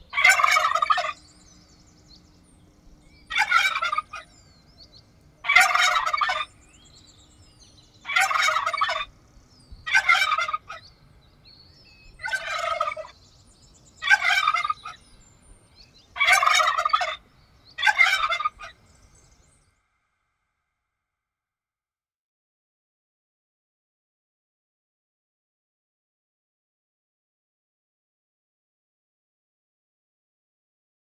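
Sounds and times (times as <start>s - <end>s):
turkey gobbling: 0.0s - 1.3s, 3.2s - 4.4s, 5.4s - 6.6s, 8.0s - 9.2s, 9.8s - 10.9s, 12.0s - 13.2s, 14.0s - 15.2s, 16.1s - 18.8s.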